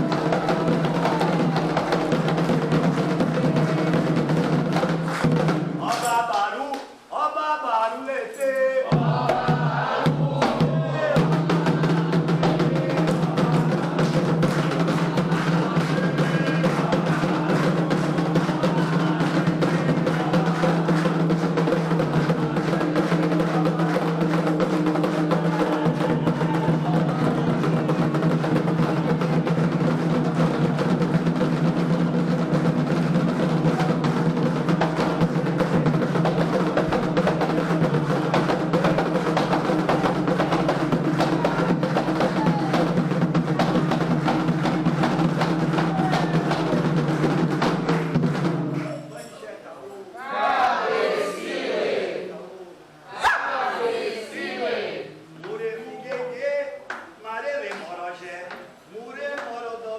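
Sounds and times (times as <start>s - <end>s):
hand drums fast rhythm: 0.0s - 5.9s, 8.9s - 49.0s.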